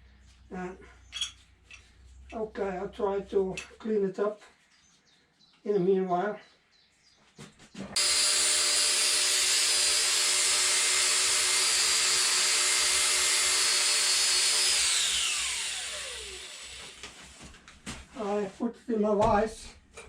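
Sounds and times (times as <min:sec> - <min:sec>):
power tool whining: 0:08.0 - 0:17.5.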